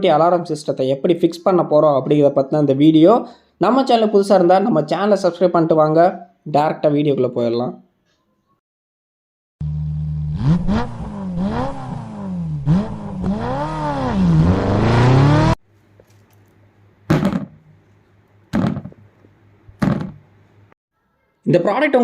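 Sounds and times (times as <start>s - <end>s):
engine revving: 9.6s - 15.6s.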